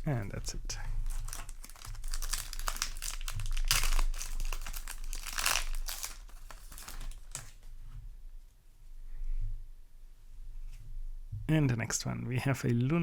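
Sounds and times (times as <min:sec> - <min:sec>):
foil wrapper crinkling and tearing: 0:00.0 - 0:07.7.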